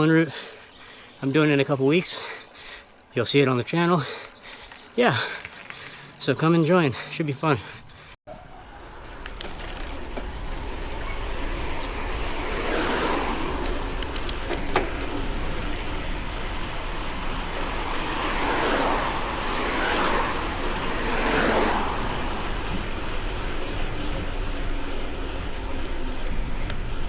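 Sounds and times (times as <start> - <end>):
wind and tyre noise: 0.0 - 27.0
cars passing: 3.3 - 27.0
sharp clicks: 13.6 - 15.9.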